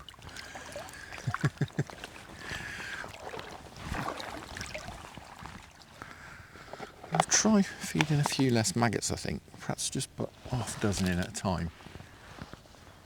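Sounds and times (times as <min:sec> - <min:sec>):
water sloshing and splashing: 0:00.0 - 0:12.8.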